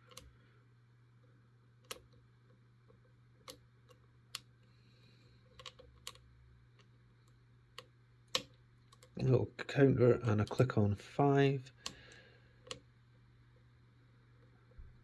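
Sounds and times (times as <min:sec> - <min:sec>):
faint lock pick clicks: 0:01.8 - 0:02.2, 0:05.6 - 0:06.2.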